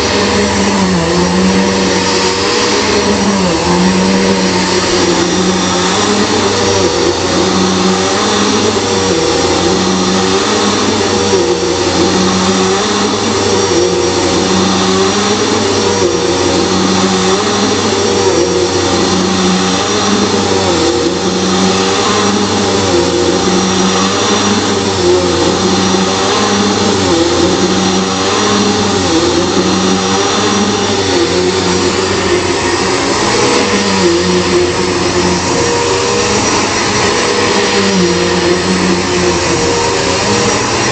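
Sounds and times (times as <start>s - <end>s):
vacuum cleaner running: 0.0s - 40.9s.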